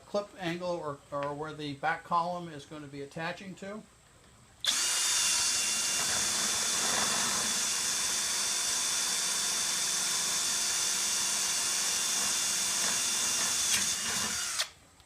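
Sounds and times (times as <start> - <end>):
power drill whining: 4.6 - 14.8.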